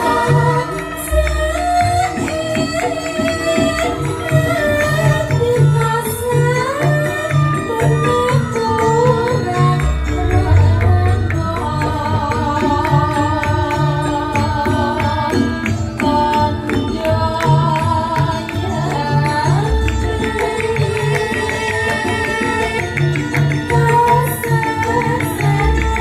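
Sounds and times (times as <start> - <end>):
band melody line: 9.4 - 15.3.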